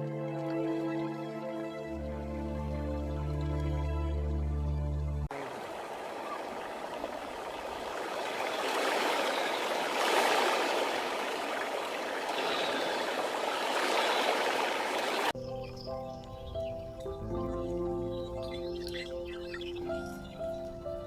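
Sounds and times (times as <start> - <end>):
running water rushing: 0.0 - 15.4.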